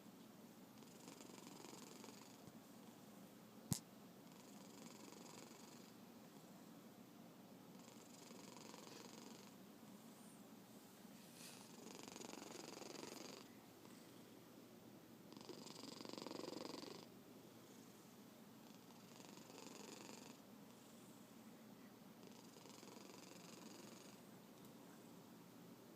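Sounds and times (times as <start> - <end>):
cat snoring faintly: 0.8 - 2.5, 3.7 - 6.7, 7.7 - 9.6, 11.2 - 14.4, 15.3 - 21.4, 22.2 - 24.3.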